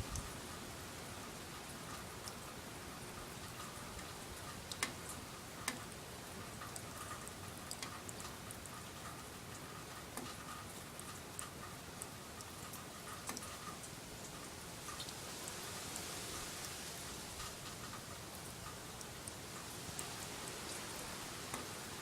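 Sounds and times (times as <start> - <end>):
steady rain: 0.0 - 22.0.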